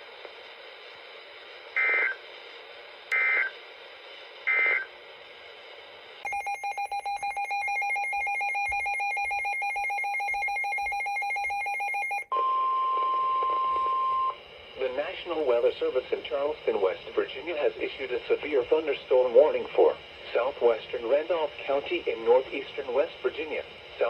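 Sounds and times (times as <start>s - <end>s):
steady weather radio alert tone: 1.8s - 2.2s, 3.1s - 3.6s, 4.5s - 4.9s.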